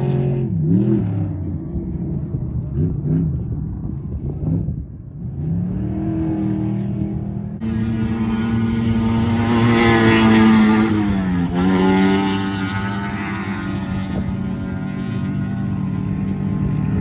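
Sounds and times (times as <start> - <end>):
truck engine at high revs passing: 5.3 - 17.0.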